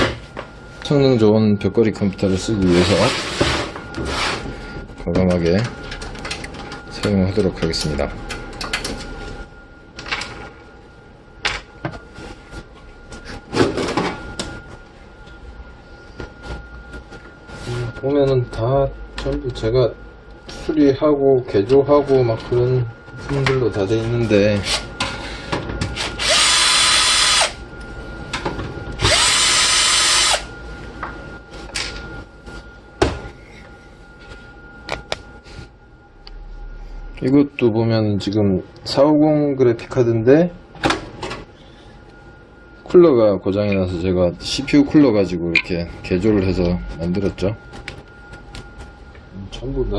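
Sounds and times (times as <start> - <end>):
electric drill whining: 26.2 - 27.6, 29.0 - 30.5.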